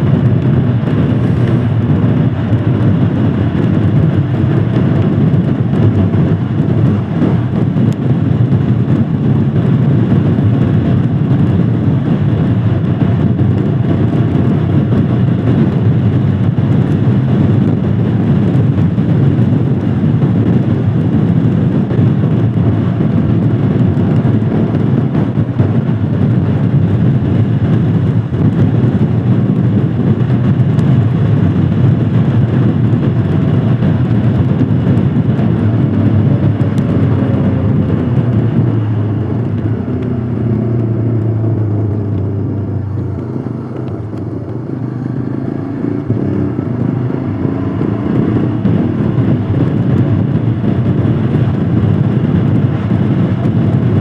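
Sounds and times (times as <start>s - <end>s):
motorcycle engine running: 0.0s - 54.0s
road noise: 0.0s - 54.0s.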